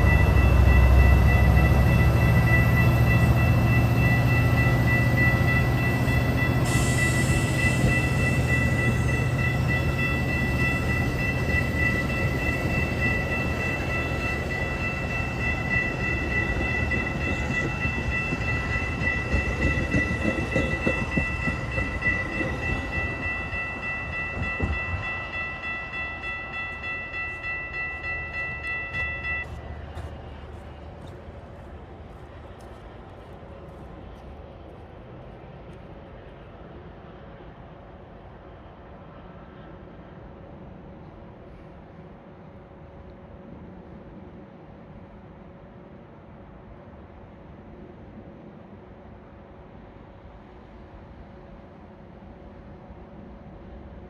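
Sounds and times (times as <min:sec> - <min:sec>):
steady high-pitched tone: 0:00.0 - 0:31.6
diesel train rumbling: 0:00.0 - 0:54.0.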